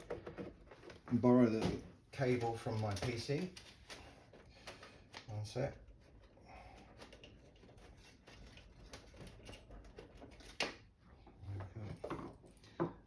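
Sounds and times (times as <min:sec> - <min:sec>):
cable rustling: 0:00.0 - 0:12.6.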